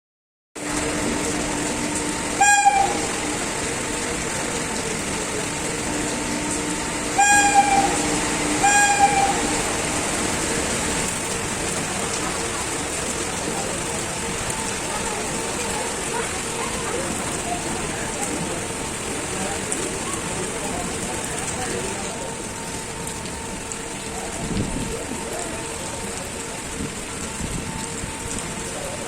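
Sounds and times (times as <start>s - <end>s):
passing train running hum: 0.6s - 29.0s
locomotive horn toots: 2.2s - 3.7s, 6.6s - 10.3s.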